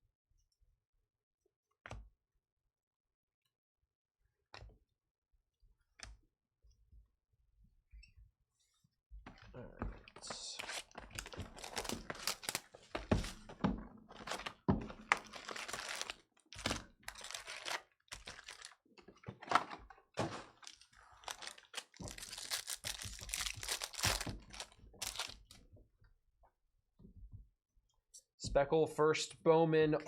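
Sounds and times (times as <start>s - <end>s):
cards thunking on a table: 9.3s - 15.3s
card pack wrappers tearing: 10.2s - 13.4s, 14.2s - 18.8s, 19.5s - 25.6s.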